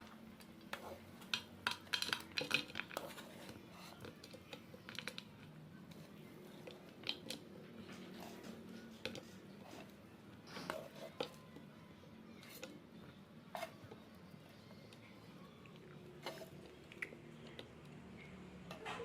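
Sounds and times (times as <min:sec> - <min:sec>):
utensils and dishes clinking: 0:00.5 - 0:06.0.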